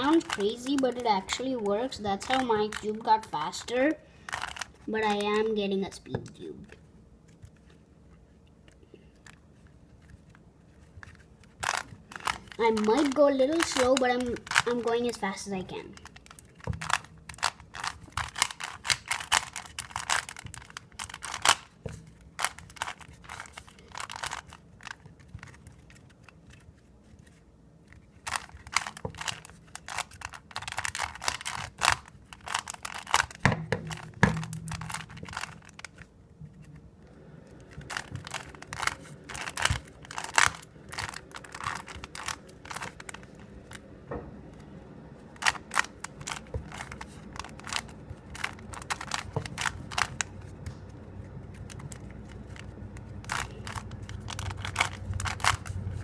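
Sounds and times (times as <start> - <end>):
plastic cube clicking: 0.0 - 3.0, 4.2 - 5.5, 11.0 - 15.2, 15.9 - 36.7, 37.6 - 43.8, 45.4 - 50.8, 51.5 - 56.0
cube knocking on surface: 33.3 - 35.5.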